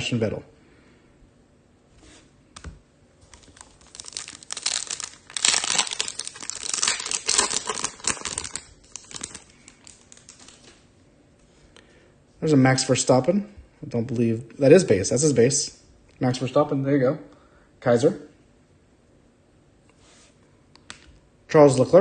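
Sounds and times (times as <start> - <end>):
foil wrapper tearing and crinkling: 3.2 - 10.7.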